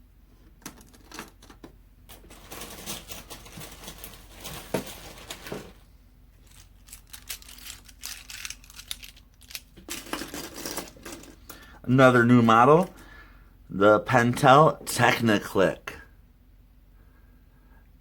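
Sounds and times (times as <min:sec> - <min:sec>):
plastic pencils clicking and clattering: 0:00.6 - 0:05.8, 0:06.4 - 0:11.6
rustling: 0:02.1 - 0:11.4.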